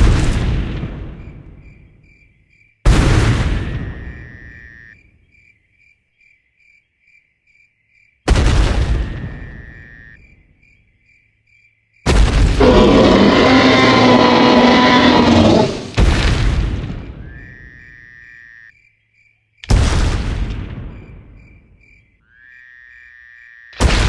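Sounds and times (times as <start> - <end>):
loud dinosaur roar: 12.5 - 16.0.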